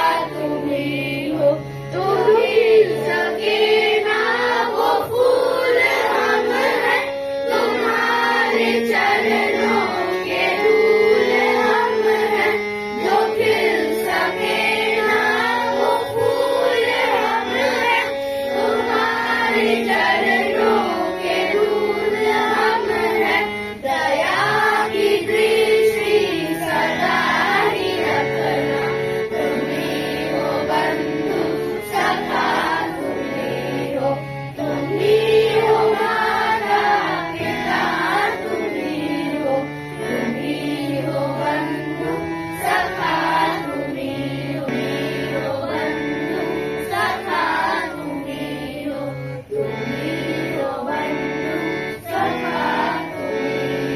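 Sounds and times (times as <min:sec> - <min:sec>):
children singing together: 0:00.0 - 0:53.9
instrumental accompaniment: 0:00.0 - 0:53.9.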